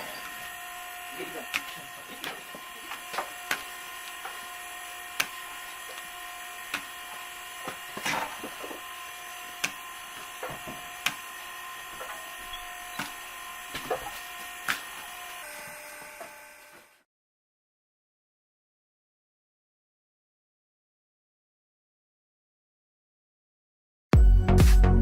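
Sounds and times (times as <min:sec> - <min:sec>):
electric machine hum: 0:00.0 - 0:17.1.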